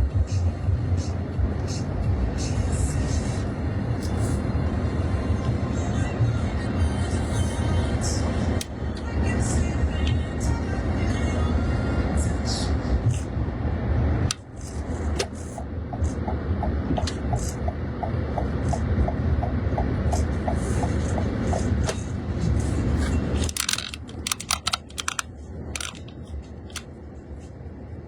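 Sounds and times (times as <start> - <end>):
car engine rumble from inside: 0.0 - 28.0
clicks and rattles: 23.4 - 26.9.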